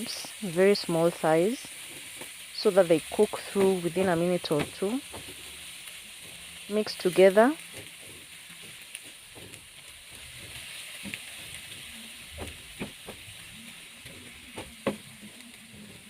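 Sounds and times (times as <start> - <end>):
food sizzling in a frying pan: 0.0 - 16.0
utensil knocking against pan: 10.2 - 13.3.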